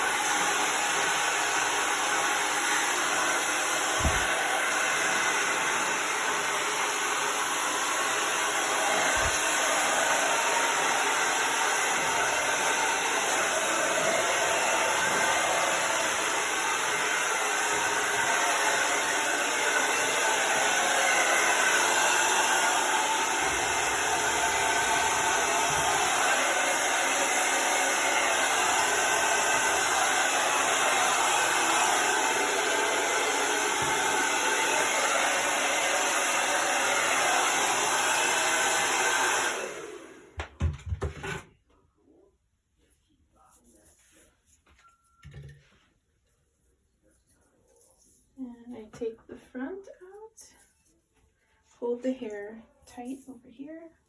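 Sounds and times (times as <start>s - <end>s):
hair dryer blowing: 0.0s - 41.4s.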